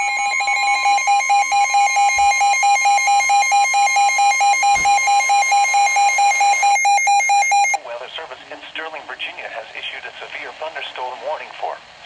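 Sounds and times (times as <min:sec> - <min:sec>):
steady warning alarm tone: 0:00.0 - 0:07.8.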